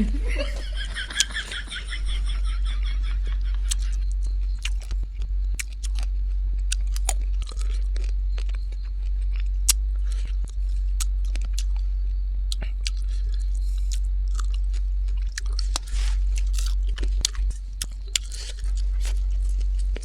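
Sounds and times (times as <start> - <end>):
chewing and crunching: 0.0 - 20.0
steady low hum: 0.0 - 20.0
sharp mouth clicks: 3.7 - 6.1.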